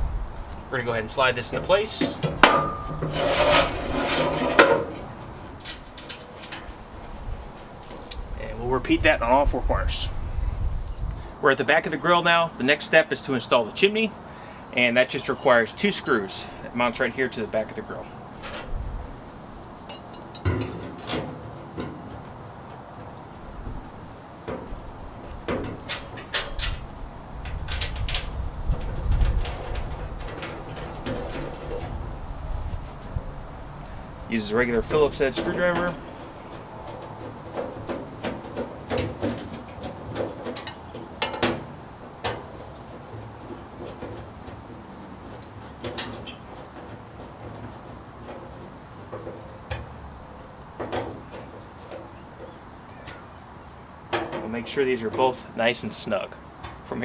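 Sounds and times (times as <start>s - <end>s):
low steady rumble: 0.0s - 11.4s
metal knocks and clicks: 1.4s - 8.0s, 19.9s - 22.4s, 27.4s - 32.0s, 34.8s - 44.7s, 45.4s - 53.2s.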